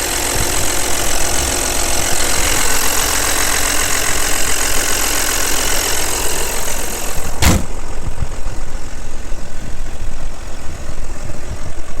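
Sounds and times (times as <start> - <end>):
car engine idling: 0.0 - 12.0
thump: 7.4 - 8.2.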